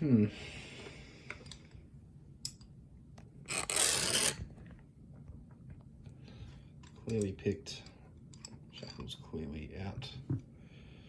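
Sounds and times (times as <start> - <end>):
padlock shackle scraping out: 3.5 - 4.4.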